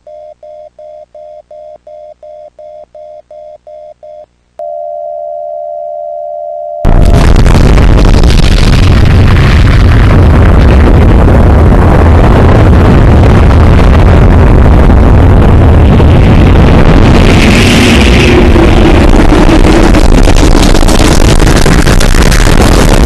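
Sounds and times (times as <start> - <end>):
distorted low rumble: 6.1 - 23.0.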